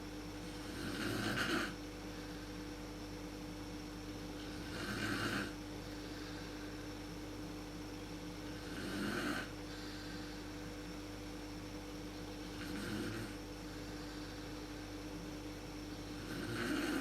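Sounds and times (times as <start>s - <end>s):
faint hum: 0.0s - 17.0s
woman snoring: 0.6s - 1.8s, 4.4s - 6.3s, 8.6s - 10.2s, 12.5s - 14.4s, 16.1s - 17.0s.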